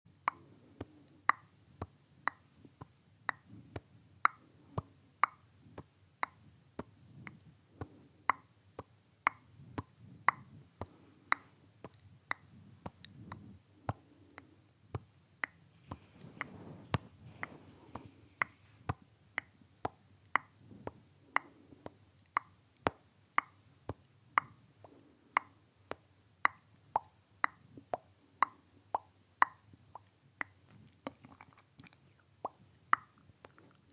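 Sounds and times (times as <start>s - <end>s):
mouth pops: 9.2s - 19.6s, 24.4s - 33.9s.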